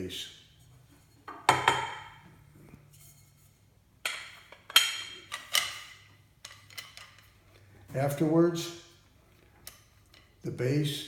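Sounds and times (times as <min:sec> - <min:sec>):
metal clanks and knocks: 0:01.0 - 0:02.3.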